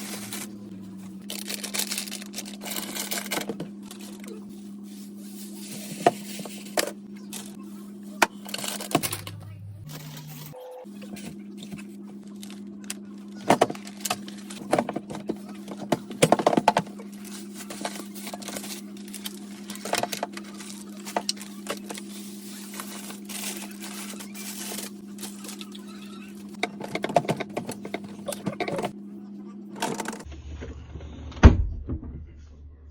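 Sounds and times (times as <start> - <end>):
refrigerator hum: 0.0 - 32.9.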